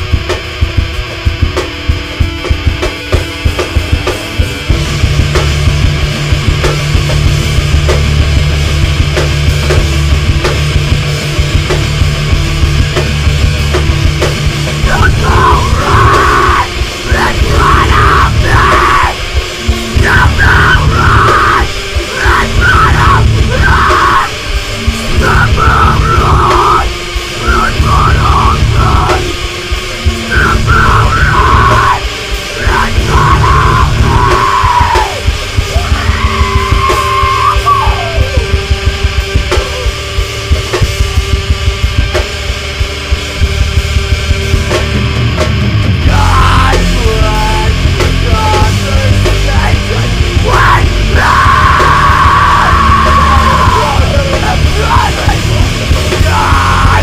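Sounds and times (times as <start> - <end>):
metal band playing: 0.0 - 57.0
screamed vocals: 14.8 - 38.7, 46.0 - 57.0.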